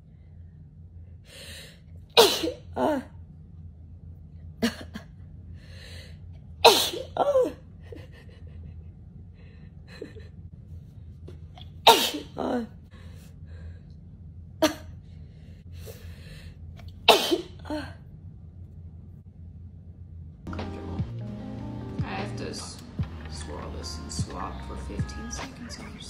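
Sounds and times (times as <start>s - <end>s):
person sneezing: 2.2s - 3.1s, 6.6s - 7.5s, 11.9s - 12.6s, 17.1s - 17.9s.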